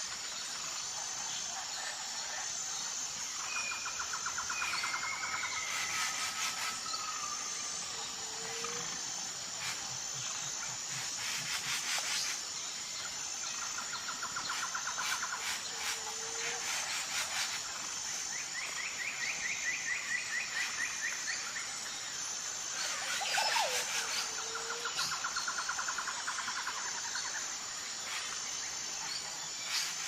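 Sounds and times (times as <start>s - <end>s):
high-pitched insect drone: 0.0s - 30.0s.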